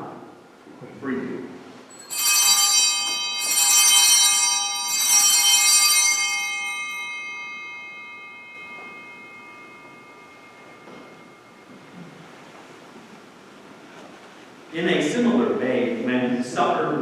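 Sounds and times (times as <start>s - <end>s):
small bells shaken: 1.9s - 12.4s.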